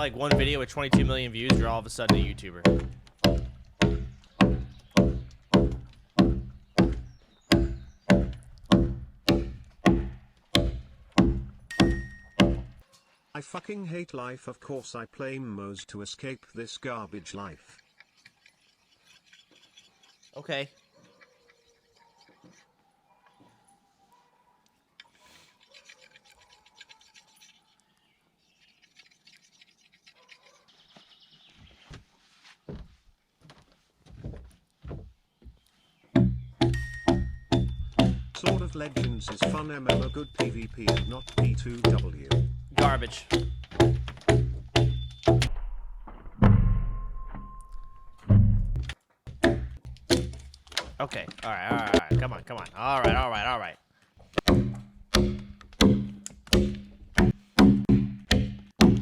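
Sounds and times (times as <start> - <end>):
dull low thuds: 0.0 - 12.8, 36.2 - 50.6, 51.9 - 53.3, 54.4 - 59.0
hand tool striking log: 0.0 - 12.8, 36.2 - 45.5, 48.8 - 53.5, 54.3 - 59.0.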